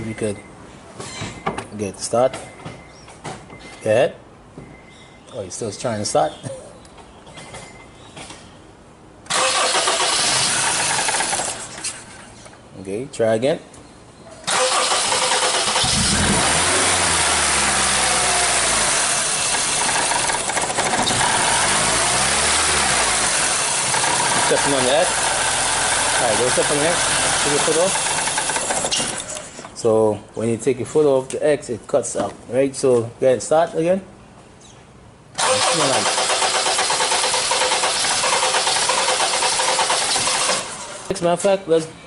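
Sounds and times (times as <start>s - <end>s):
car engine running: 15.6s - 28.6s.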